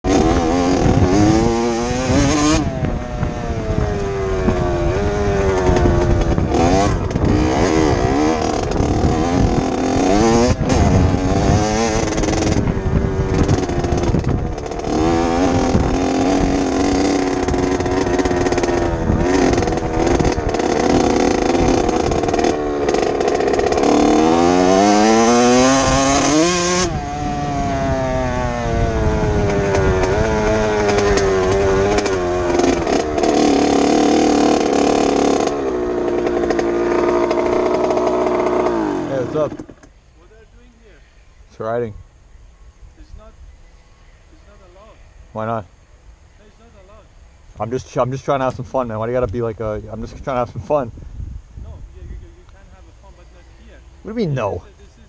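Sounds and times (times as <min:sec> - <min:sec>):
dirt bike engine revving: 0:00.0 - 0:40.3, 0:54.0 - 0:55.0.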